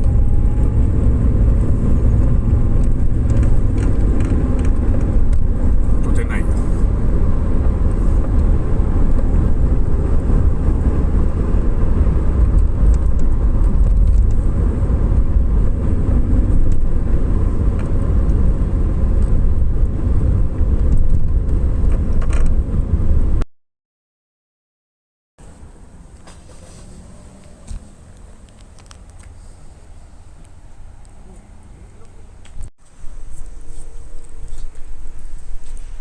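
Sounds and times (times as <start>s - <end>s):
road and engine noise inside car: 0.0s - 23.4s, 25.4s - 36.0s.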